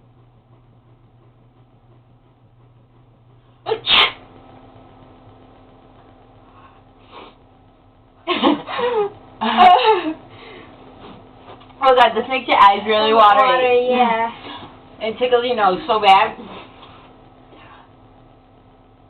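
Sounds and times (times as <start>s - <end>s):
person sneezing: 3.7s - 4.2s.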